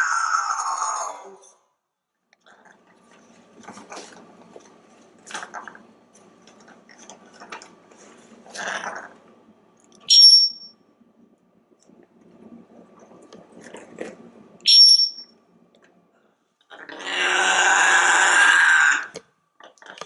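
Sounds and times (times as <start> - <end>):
parrot growling: 0.0 - 1.6, 8.4 - 9.2, 16.7 - 19.2
high-pitched squeak: 14.7 - 15.3.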